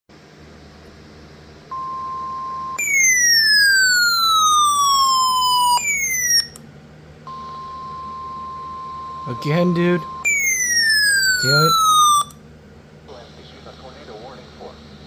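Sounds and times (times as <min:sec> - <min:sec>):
steady high alert tone: 0:01.7 - 0:06.6, 0:07.3 - 0:12.4
falling siren-like sweep: 0:02.3 - 0:06.6, 0:07.6 - 0:12.4.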